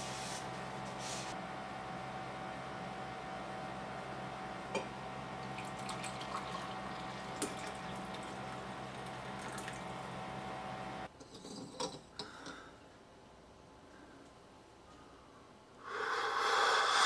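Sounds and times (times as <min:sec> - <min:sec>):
steady hum: 0:00.0 - 0:11.1.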